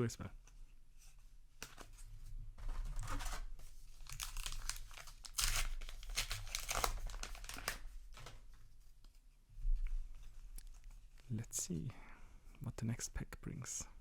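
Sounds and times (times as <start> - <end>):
paper wrapper tearing and crinkling: 2.7 - 8.3.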